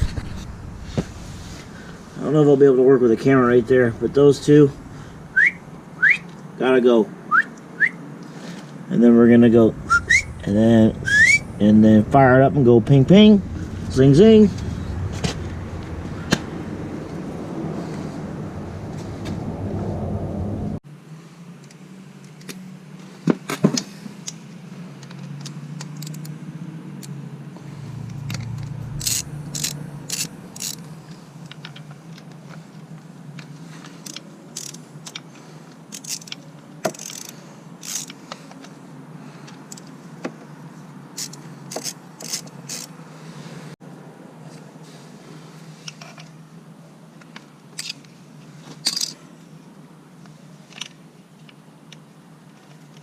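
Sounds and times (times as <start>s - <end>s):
low hum: 0.0s - 6.2s, 9.1s - 20.8s, 27.6s - 31.3s.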